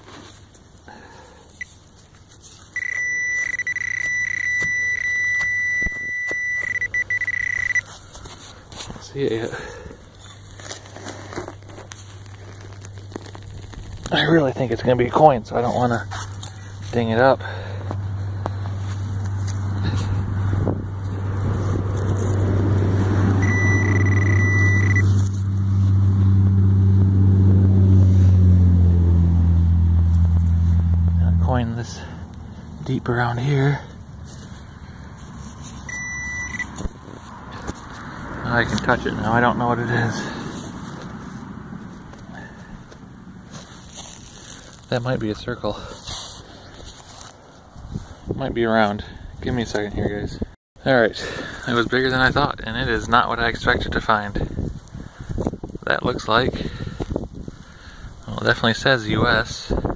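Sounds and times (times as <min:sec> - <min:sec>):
high-pitched electronic beep: 0:02.8 - 0:07.8, 0:23.4 - 0:25.2, 0:35.9 - 0:36.7
metal detector high tone: 0:02.8 - 0:07.9, 0:23.4 - 0:25.3, 0:35.9 - 0:36.8
low engine hum: 0:02.8 - 0:45.0.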